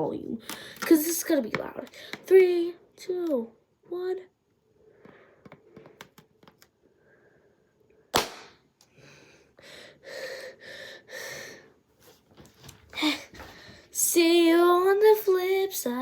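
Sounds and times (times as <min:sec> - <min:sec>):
balloon popping: 0:08.1 - 0:08.6.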